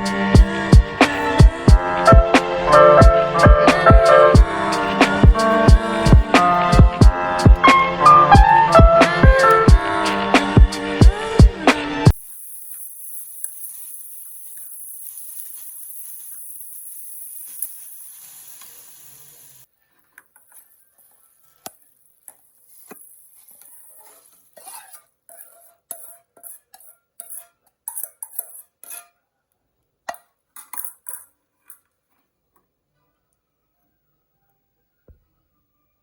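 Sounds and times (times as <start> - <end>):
steady hiss: 0.0 - 19.7.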